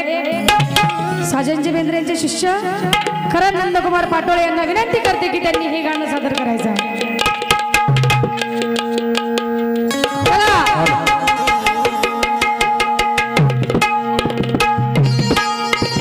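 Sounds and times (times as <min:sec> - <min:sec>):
steady held notes: 0:00.0 - 0:16.0
hand drums rhythm: 0:00.3 - 0:16.0
pitch-bending bass drum strokes: 0:00.4 - 0:02.0.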